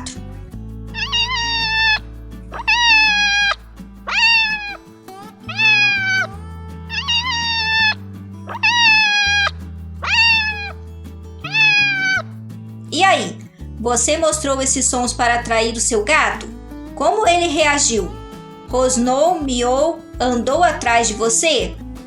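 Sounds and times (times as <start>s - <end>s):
background music: 0.0s - 22.0s
kitten meowing: 1.0s - 4.8s, 5.5s - 10.8s, 11.4s - 12.2s.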